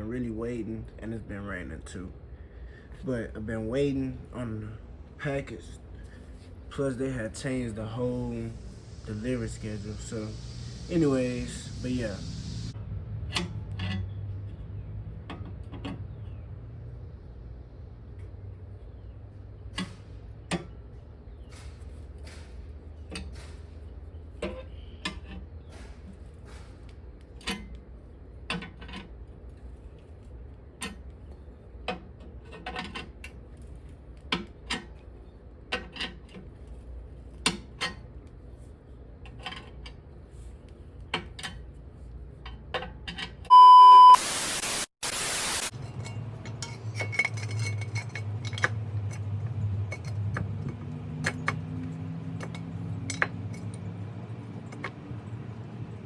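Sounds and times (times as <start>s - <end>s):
low hum: 5.9s - 15.5s
loud hiss: 8.0s - 12.8s, 44.1s - 45.7s
short beep: 43.5s - 44.9s.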